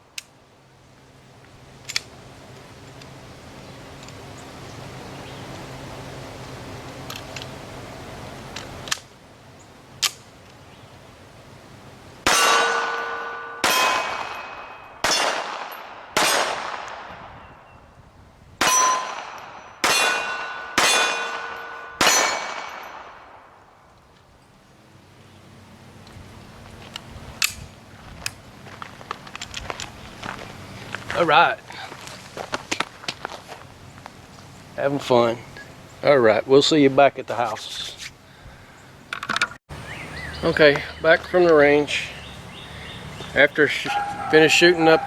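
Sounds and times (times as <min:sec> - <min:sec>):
pistol shots with metallic ring: 0:12.2 - 0:17.2, 0:18.6 - 0:23.6.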